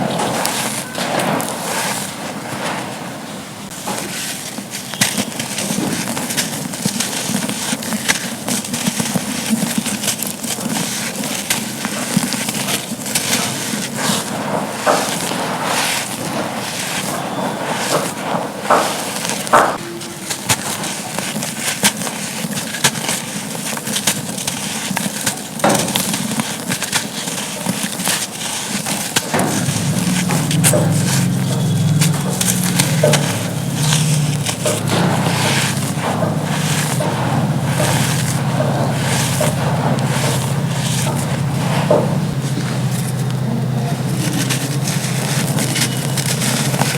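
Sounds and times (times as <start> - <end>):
charcoal crunching and snapping: 20.4 - 46.9
low hum: 29.4 - 46.9.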